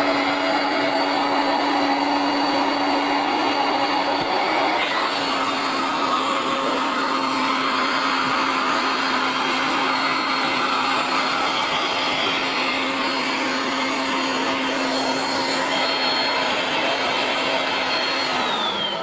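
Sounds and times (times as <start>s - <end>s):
electric air pump humming: 0.0s - 19.0s.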